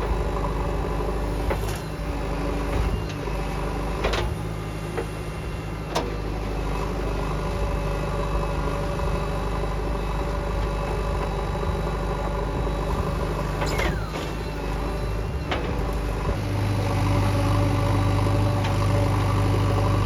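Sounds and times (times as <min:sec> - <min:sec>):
diesel engine running: 0:00.0 - 0:20.0
short falling squeak: 0:13.6 - 0:14.6.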